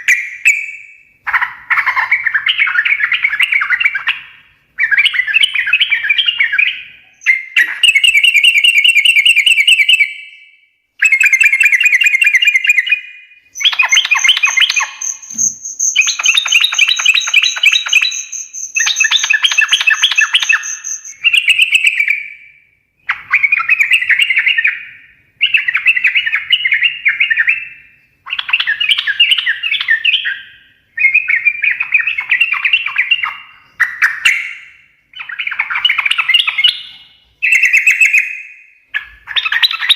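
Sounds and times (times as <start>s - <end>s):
bird singing chattering phrases: 11.2s - 22.0s.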